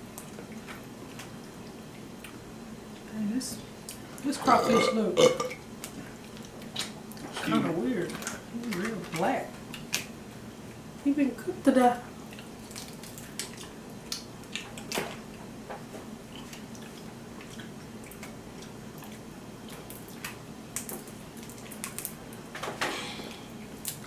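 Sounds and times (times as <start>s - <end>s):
wet squishy eating: 12.2s - 15.4s, 16.2s - 22.5s.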